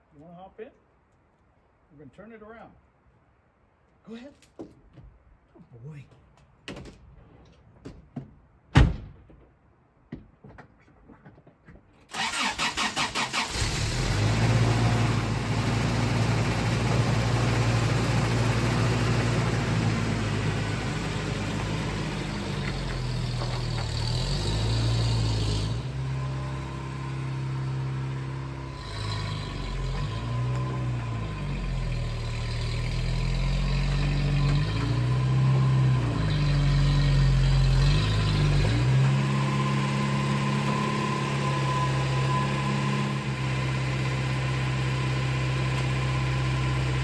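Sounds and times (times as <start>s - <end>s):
starter motor cranking: 12.1s - 13.8s
engine running: 12.1s - 47.0s.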